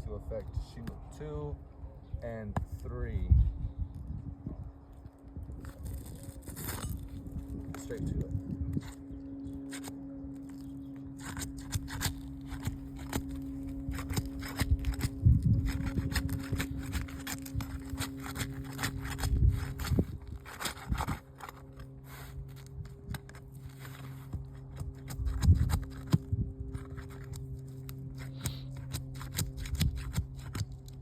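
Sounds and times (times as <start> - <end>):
roof tool scraping and clicking: 9.7 - 31.0.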